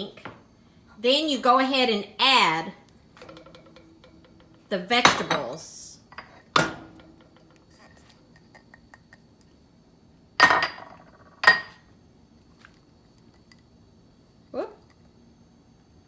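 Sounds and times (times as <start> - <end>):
kitchenware knocking and clinking: 3.2 - 7.8, 10.4 - 11.8.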